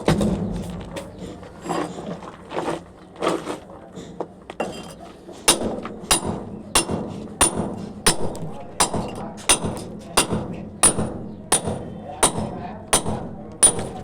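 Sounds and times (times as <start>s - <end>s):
voices: 6.6s - 14.0s.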